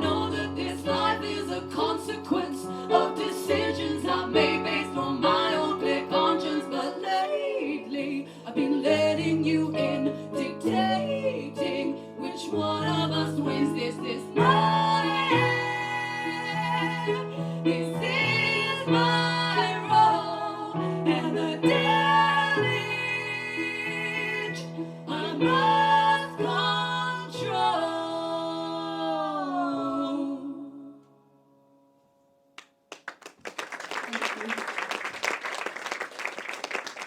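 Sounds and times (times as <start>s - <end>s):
piano accompaniment: 0.0s - 28.7s
women singing: 0.0s - 31.0s.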